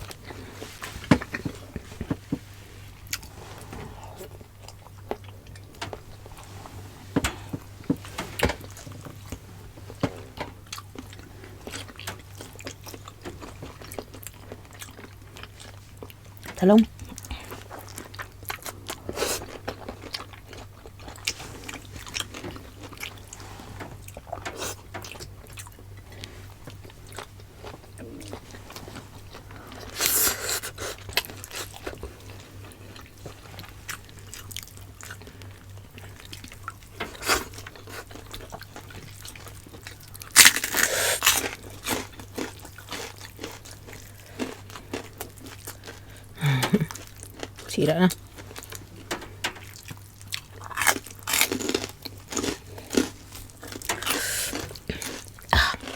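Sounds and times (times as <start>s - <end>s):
chewing and biting food: 7.5s - 49.0s, 49.6s - 55.9s
crunchy bites: 40.2s - 43.6s, 50.6s - 55.9s.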